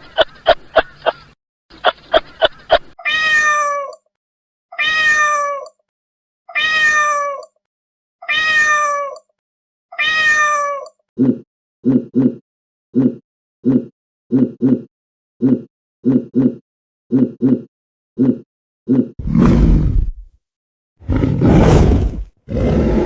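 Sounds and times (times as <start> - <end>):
cat meowing: 3.0 - 4.0, 4.7 - 5.8, 6.5 - 7.5, 8.2 - 9.2, 9.9 - 10.9
animal grunting: 17.2 - 20.3, 21.0 - 23.0.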